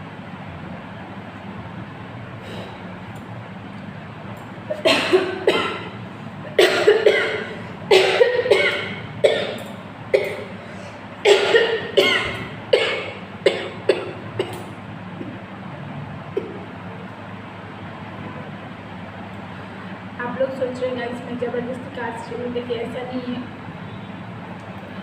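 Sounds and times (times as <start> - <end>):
woman coughing: 4.7 - 6.0, 6.6 - 10.6, 11.2 - 14.6.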